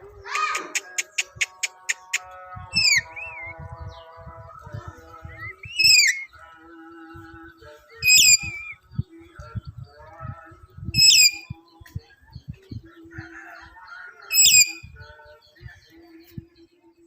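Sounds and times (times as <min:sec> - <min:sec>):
soft bird chirps and whistles: 0:00.4 - 0:04.3, 0:04.9 - 0:06.5, 0:07.3 - 0:10.0, 0:10.9 - 0:16.6
parrot shrill calls: 0:02.7 - 0:03.1, 0:14.3 - 0:14.8.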